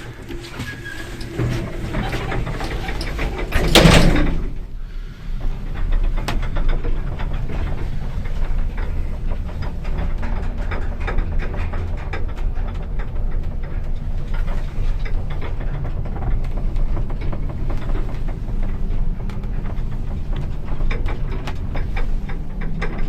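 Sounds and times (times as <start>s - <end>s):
lift car humming: 0.0s - 23.0s
small rattles and clicks: 0.0s - 23.0s
lift doors banging shut: 0.3s - 4.7s.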